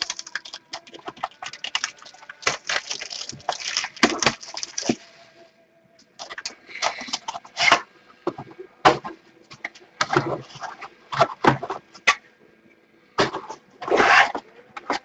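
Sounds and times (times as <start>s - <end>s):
plastic wrap crinkling: 0.0s - 5.2s.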